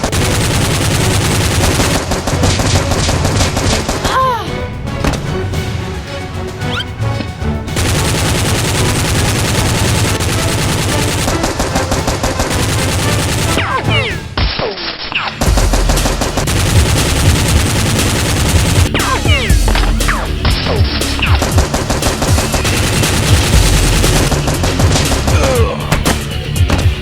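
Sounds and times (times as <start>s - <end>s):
rapid automatic gunfire: 0.0s - 4.2s, 7.8s - 14.2s, 15.4s - 26.2s.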